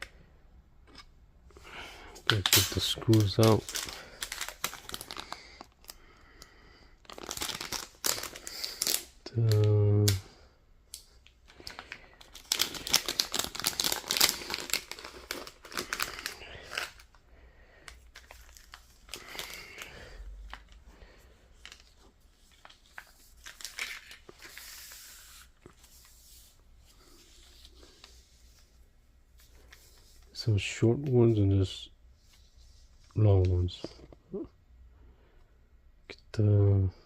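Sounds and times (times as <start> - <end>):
plastic bag crinkling: 2.2 - 6.0, 7.0 - 10.2, 11.2 - 17.2, 17.8 - 25.8.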